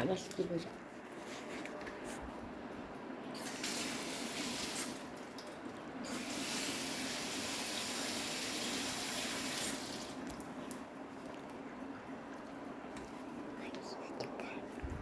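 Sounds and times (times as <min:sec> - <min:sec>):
water running from tap: 0:03.4 - 0:10.2.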